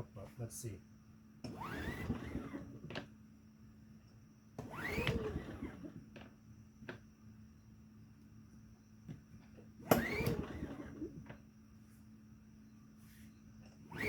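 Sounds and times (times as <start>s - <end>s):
pull-starter whir: 1.4s - 2.8s, 4.6s - 6.0s, 9.8s - 11.4s, 13.8s - 14.0s.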